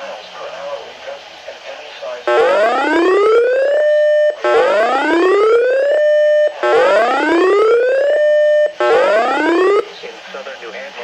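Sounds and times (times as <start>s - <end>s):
electronic alert siren whoop: 2.3s - 9.8s.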